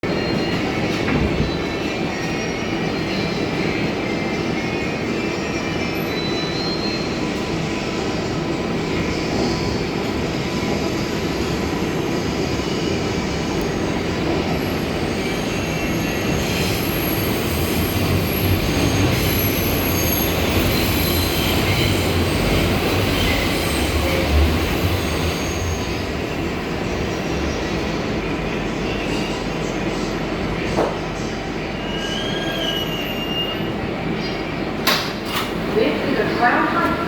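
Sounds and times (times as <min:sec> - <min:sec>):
subway train rumble: 0:00.0 - 0:37.0
wheel squeal: 0:31.8 - 0:33.7.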